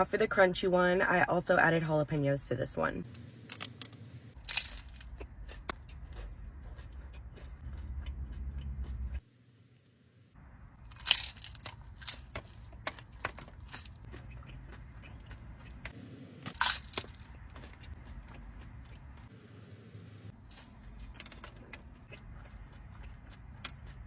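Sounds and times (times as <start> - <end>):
crunchy taco shell chewing: 4.3 - 9.9, 10.8 - 24.0.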